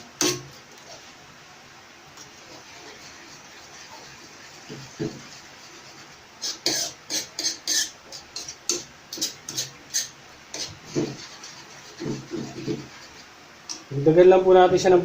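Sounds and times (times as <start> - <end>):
metal utensil scraping a pan: 2.2 - 13.3.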